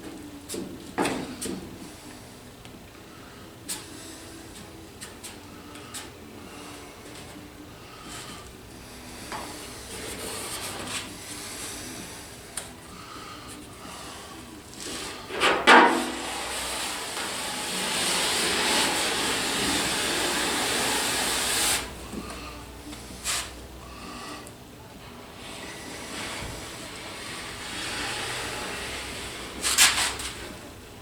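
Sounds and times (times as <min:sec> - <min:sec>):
spreader scraping body filler: 0:08.0 - 0:30.8.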